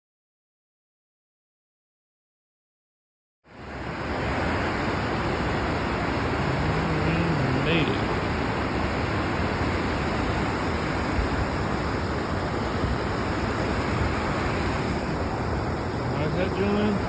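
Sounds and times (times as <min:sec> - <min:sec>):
waterfall roaring: 0:03.6 - 0:17.0.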